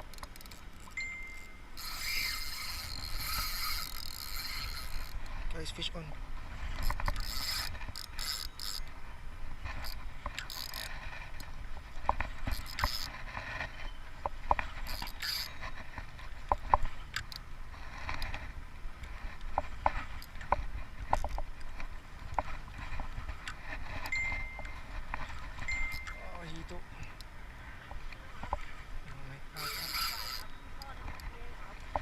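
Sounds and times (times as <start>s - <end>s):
fishing reel clicking: 0.0s - 5.8s, 6.8s - 9.0s, 9.7s - 11.5s, 12.4s - 13.8s, 14.5s - 17.4s, 25.5s - 27.3s, 29.5s - 32.0s.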